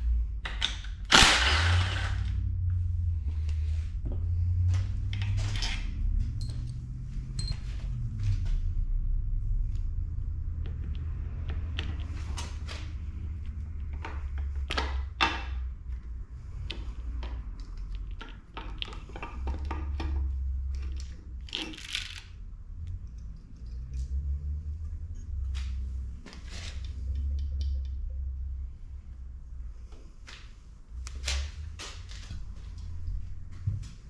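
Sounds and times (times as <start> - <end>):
steady low hum: 0.0 - 21.5, 22.2 - 34.0
metal engine parts clinking: 17.6 - 22.4.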